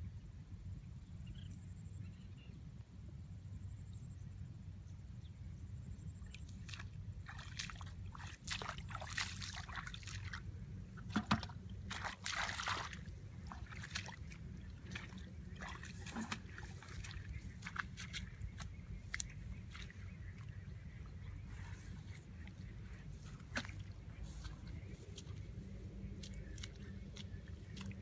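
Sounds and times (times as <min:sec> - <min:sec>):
steady low rumble: 0:00.0 - 0:28.0
water splashing and sloshing: 0:06.1 - 0:28.0.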